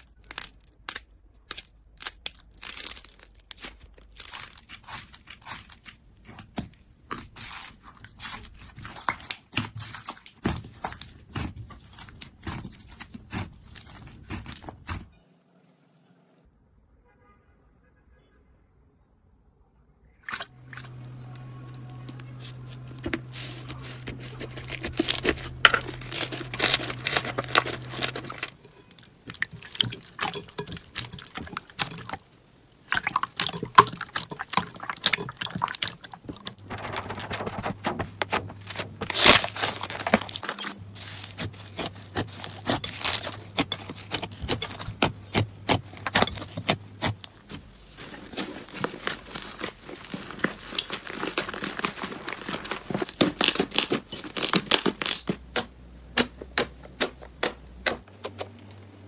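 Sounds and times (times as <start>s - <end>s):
sticky crackling and popping clicks: 0.0s - 7.3s.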